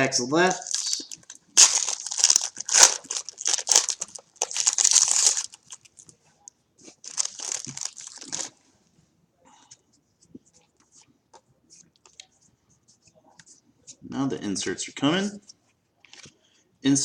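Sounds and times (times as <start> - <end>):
card pack wrapper crinkling: 0.6 - 6.0, 7.0 - 8.5.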